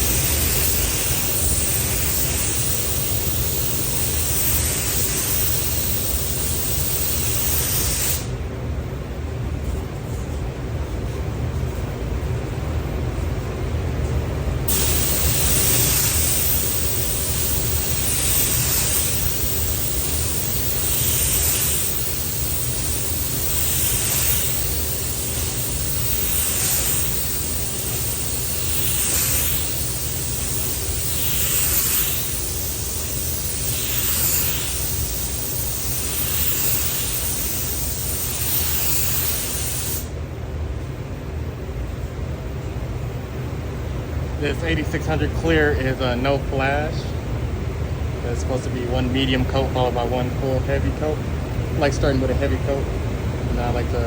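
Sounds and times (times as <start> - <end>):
spray gun air hiss: 0.0 - 8.4, 14.7 - 40.2.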